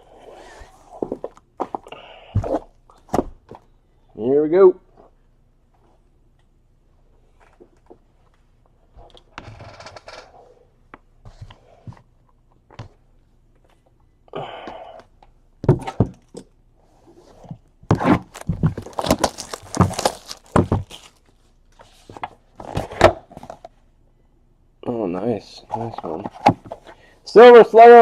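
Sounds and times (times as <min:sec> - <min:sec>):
wrapper tearing and crinkling: 0:18.2 - 0:21.3.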